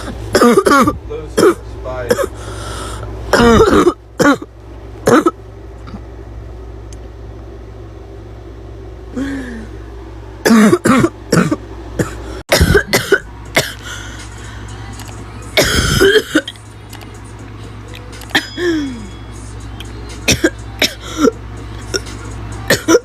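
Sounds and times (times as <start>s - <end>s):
steady low hum: 0.0s - 23.0s
girl coughing: 0.3s - 2.3s, 3.3s - 4.5s, 5.1s - 5.4s, 10.4s - 13.8s, 15.6s - 16.5s, 18.4s - 19.1s, 20.3s - 22.0s, 22.7s - 23.0s.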